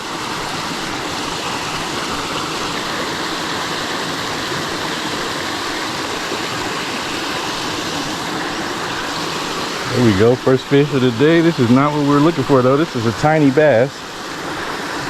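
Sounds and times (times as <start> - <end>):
water rushing over spillway: 0.0 - 15.0.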